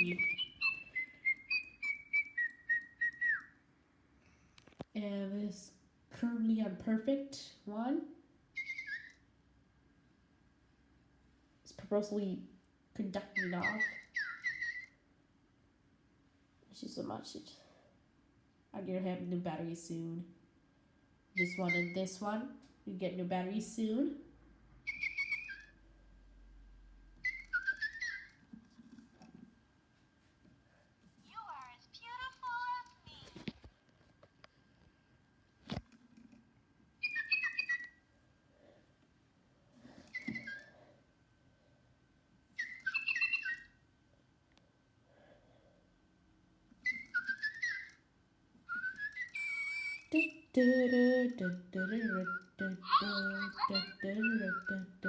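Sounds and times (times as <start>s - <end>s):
toy bird electronic chirping: 0.0s - 3.5s, 8.6s - 9.2s, 13.3s - 15.0s, 21.4s - 22.0s, 24.8s - 25.8s, 27.2s - 28.4s, 37.0s - 38.0s, 40.1s - 40.7s, 42.6s - 43.8s, 46.8s - 48.0s, 48.7s - 54.9s.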